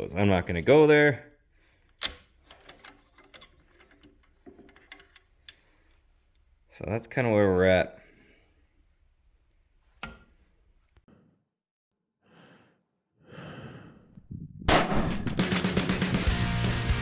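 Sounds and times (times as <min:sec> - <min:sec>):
soft breaths: 0:08.0 - 0:09.0, 0:12.2 - 0:14.5
loud music: 0:14.7 - 0:17.0.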